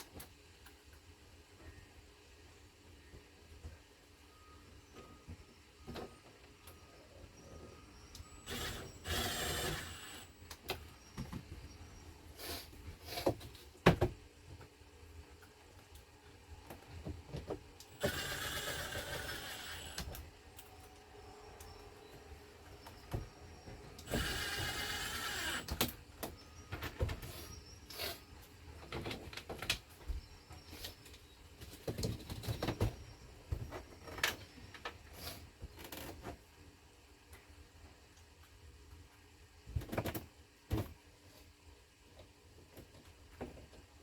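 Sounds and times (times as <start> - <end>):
power tool motor whirring: 8.4 - 10.4, 17.9 - 20.2, 24.0 - 25.9.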